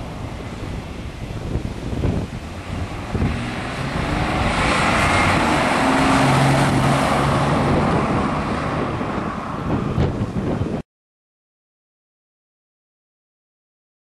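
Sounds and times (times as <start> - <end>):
car driving on road: 0.0 - 10.8.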